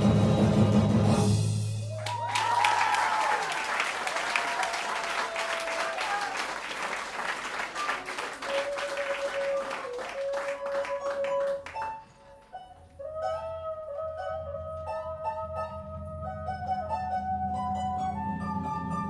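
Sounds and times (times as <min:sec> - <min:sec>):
audience applauding: 0:01.9 - 0:12.5
held musical notes: 0:08.1 - 0:19.0.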